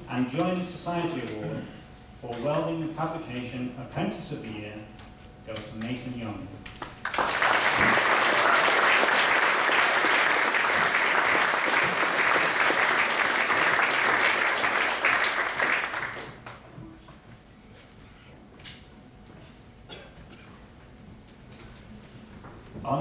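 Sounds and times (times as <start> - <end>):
audience applauding: 6.8 - 16.6.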